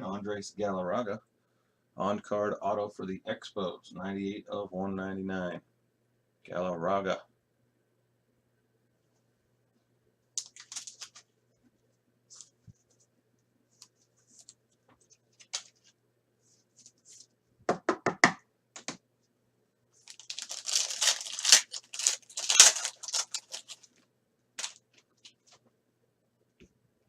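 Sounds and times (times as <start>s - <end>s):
wrapper tearing and crinkling: 10.4s - 11.2s, 20.0s - 23.9s, 24.6s - 25.3s.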